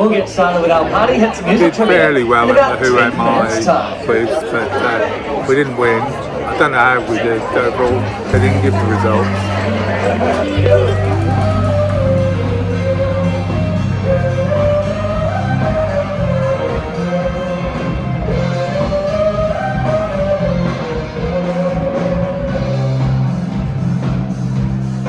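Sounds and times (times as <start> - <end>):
rock music with guitar: 8.4 - 25.0.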